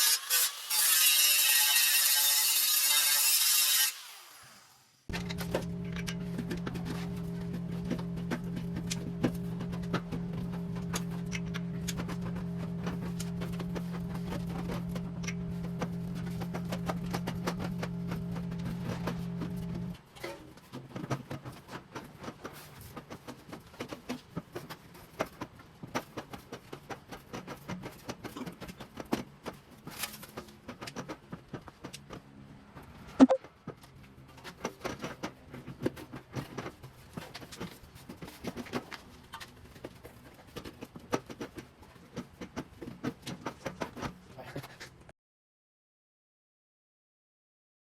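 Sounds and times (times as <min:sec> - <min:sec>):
machine hum: 0:05.1 - 0:20.0.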